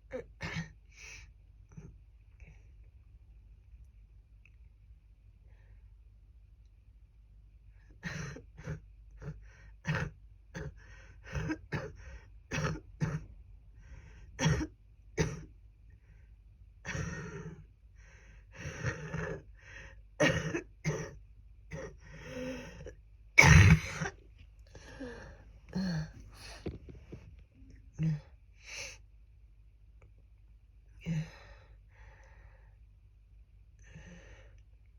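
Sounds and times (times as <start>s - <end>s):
person coughing: 8.1s - 13.3s, 14.4s - 15.5s, 16.9s - 17.6s, 20.2s - 22.0s, 22.7s - 24.2s.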